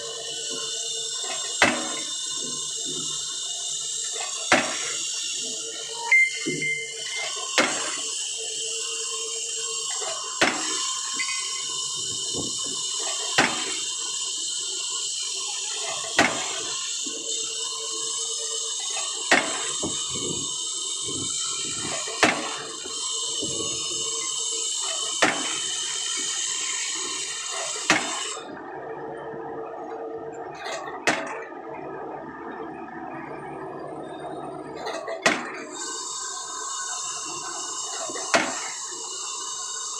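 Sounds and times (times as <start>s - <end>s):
steady hiss: 6.7s - 28.4s
pile hammer sharp blows: 38.3s - 38.7s.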